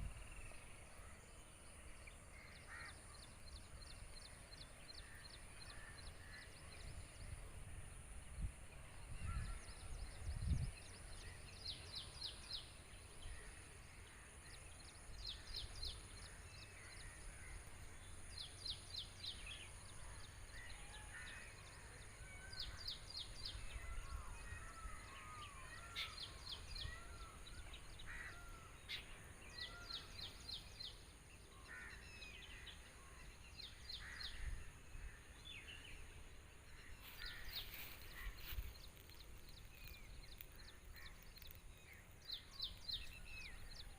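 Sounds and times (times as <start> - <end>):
birds singing and calling: 8.9 - 43.9.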